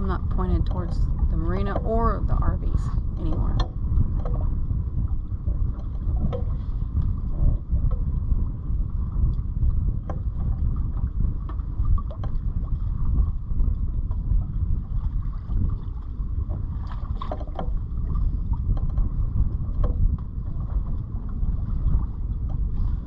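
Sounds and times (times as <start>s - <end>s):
wind buffeting microphone: 0.0s - 23.0s.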